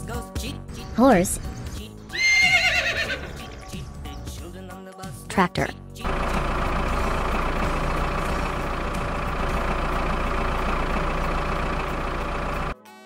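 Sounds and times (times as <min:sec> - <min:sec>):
tractor engine running: 0:06.0 - 0:12.8.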